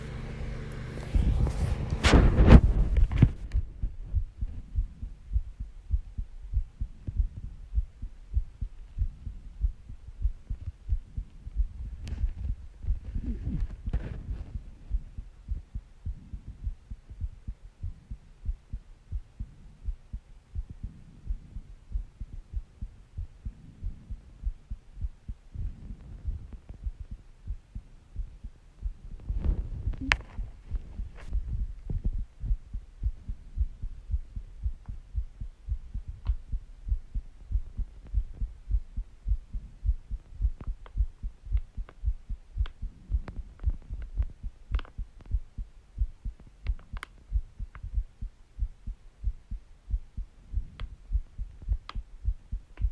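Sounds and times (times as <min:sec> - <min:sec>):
heartbeat thumps: 0:01.0 - 0:52.9.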